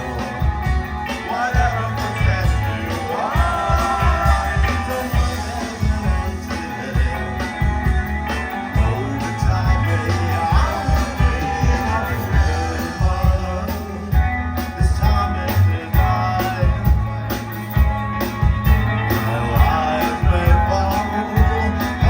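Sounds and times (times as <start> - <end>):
drum beat: 0.0 - 15.3
bass guitar: 0.0 - 22.0
electric guitar: 0.0 - 22.0.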